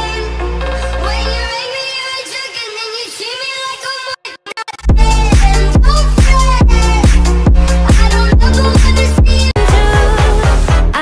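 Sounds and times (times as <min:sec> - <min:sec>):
electronic dance music: 0:00.0 - 0:11.0.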